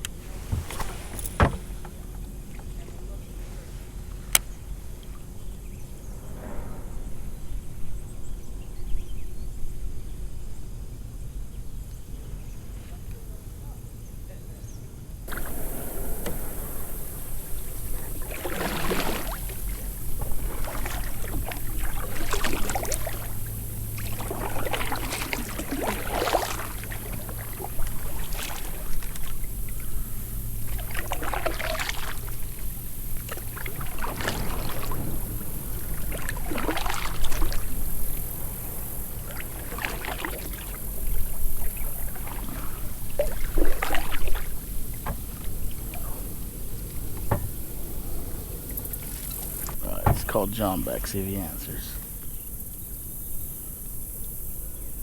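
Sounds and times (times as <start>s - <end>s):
kayak paddle splashing: 0.0s - 5.2s, 15.3s - 52.6s.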